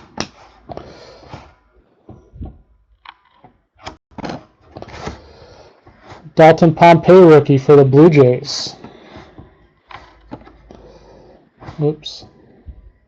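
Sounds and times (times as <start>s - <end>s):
cards scraping and clicking: 3.0s - 6.4s, 8.7s - 12.6s.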